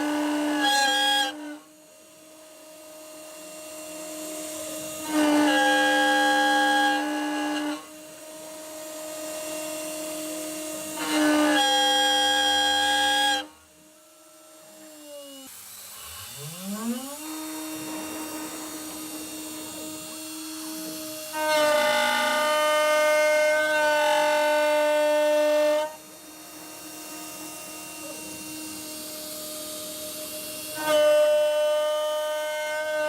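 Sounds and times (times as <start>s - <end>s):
screeching metal cutting: 0.0s - 1.6s, 2.8s - 33.0s
high spindle whine: 11.6s - 32.3s.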